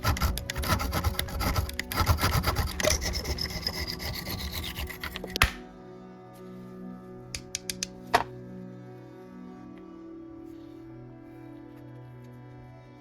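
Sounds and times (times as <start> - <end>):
file rasping on metal: 0.0 - 5.5
sharp click: 5.2 - 5.7, 7.4 - 8.0.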